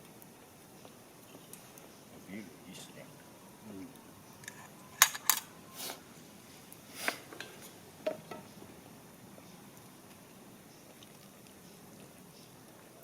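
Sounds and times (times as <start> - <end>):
tableware clinking and knocking: 7.4 - 8.6.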